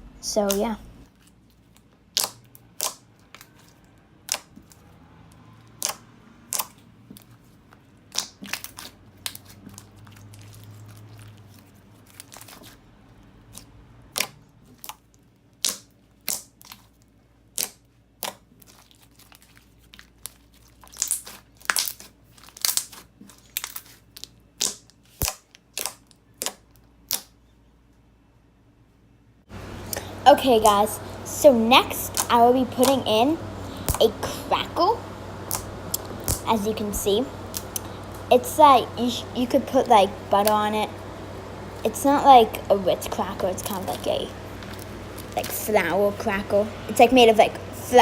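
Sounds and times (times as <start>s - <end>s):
slime clicking and popping: 2.1s - 4.8s, 5.7s - 7.3s, 8.1s - 10.4s, 13.5s - 15.0s, 15.6s - 16.9s, 17.5s - 18.8s, 20.2s - 27.4s.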